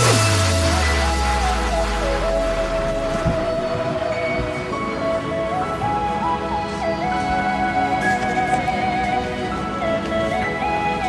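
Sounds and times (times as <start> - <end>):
steady low tone: 0.0 - 7.6
slow melody of held notes: 0.0 - 11.0.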